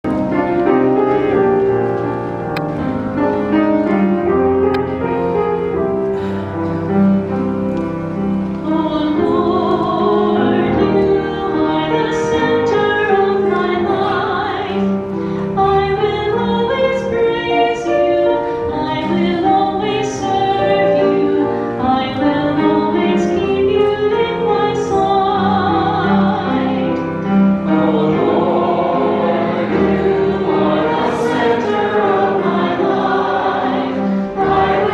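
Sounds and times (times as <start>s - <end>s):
choir singing long held chords: 27.6s - 34.9s.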